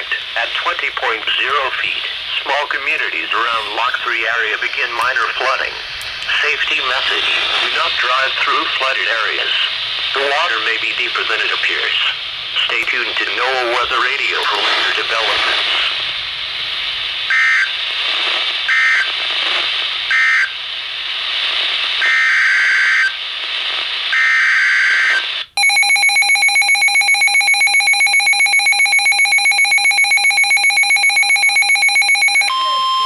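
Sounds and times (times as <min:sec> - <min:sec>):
radio hiss: 0:00.0 - 0:25.6
pulsing electronic alarm: 0:25.6 - 0:33.0.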